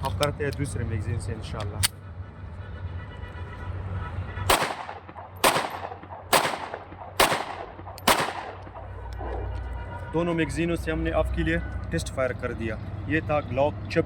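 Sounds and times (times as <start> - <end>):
pistol shots: 4.5 - 8.9.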